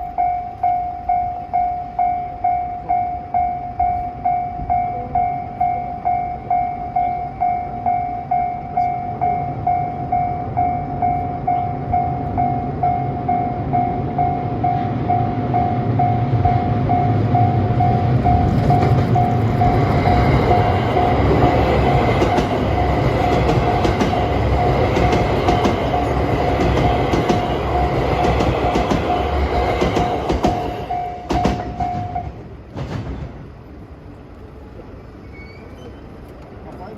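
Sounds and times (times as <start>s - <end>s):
train wheels clicking over rails: 16.0s - 34.2s.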